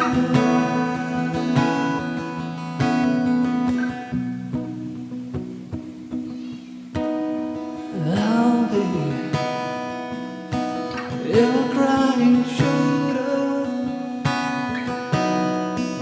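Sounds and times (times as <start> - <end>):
person singing long sliding notes: 0.0 - 2.8, 7.8 - 9.9, 11.2 - 14.0
acoustic guitar strumming: 0.0 - 16.0.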